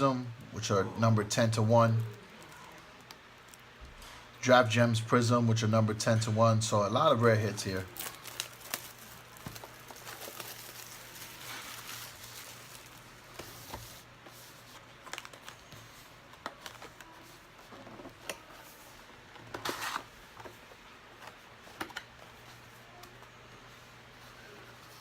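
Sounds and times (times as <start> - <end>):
low steady hum: 0.0 - 25.0
hands handling card packs: 7.4 - 18.6
foil pack crinkle: 7.5 - 14.0.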